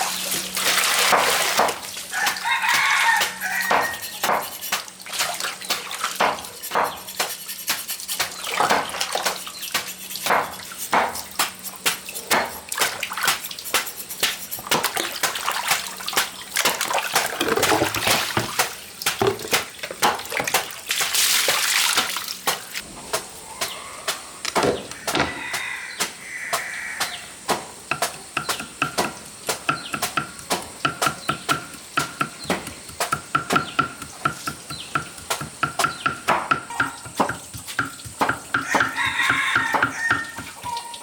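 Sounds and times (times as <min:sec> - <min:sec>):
water sloshing and splashing: 0:00.0 - 0:06.8, 0:08.1 - 0:22.8.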